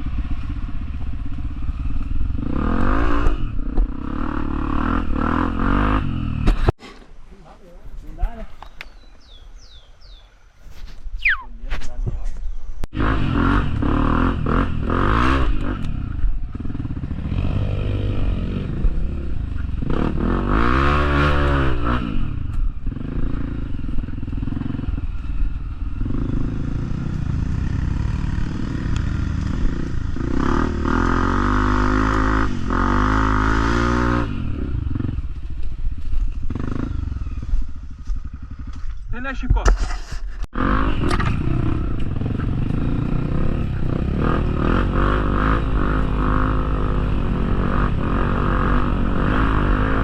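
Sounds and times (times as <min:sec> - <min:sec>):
motorcycle engine revving: 0:00.0 - 0:06.8, 0:12.9 - 0:39.1, 0:40.4 - 0:50.0.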